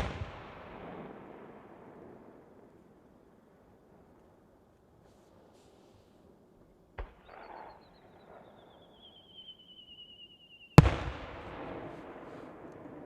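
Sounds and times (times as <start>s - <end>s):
firework whistling: 7.2s - 12.0s
firework bang: 10.8s - 12.6s.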